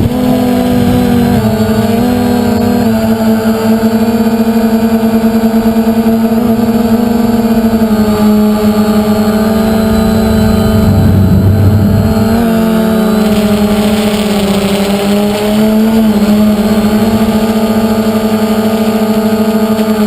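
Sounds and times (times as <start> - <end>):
drone motors buzzing whine: 0.0 - 20.0
low rumble: 8.4 - 14.2.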